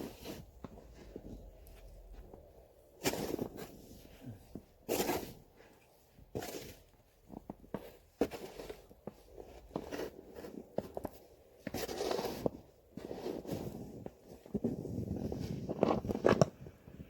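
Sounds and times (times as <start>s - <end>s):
shovel scraping snow: 0.0s - 0.5s, 3.0s - 4.1s, 4.8s - 5.4s, 6.3s - 6.8s, 7.7s - 10.9s, 11.6s - 14.0s.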